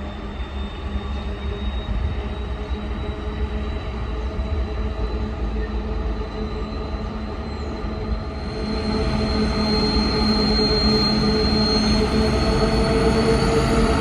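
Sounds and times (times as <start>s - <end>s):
diesel locomotive drone: 0.0s - 14.0s
thin high whine: 5.2s - 14.0s.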